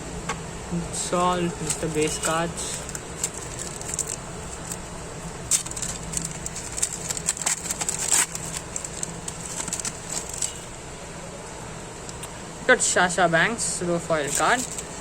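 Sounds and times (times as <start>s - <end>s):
foil wrapper crinkling: 1.5s - 10.7s, 14.2s - 15.0s.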